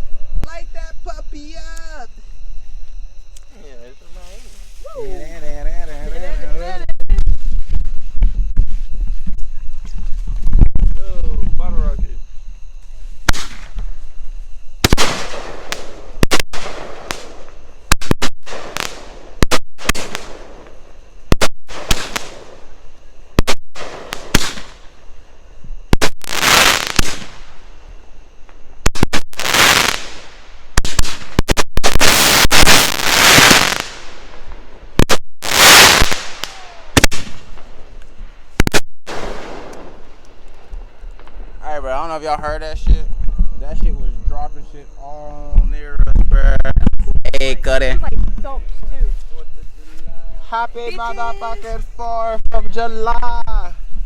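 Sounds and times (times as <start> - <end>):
hissing crackle of fireworks bursts: 4.0 - 9.5, 12.8 - 25.3, 25.9 - 41.7
fireworks launch pops and bangs: 12.8 - 14.1, 14.8 - 25.1, 25.9 - 27.7, 28.4 - 41.6, 45.5 - 49.4.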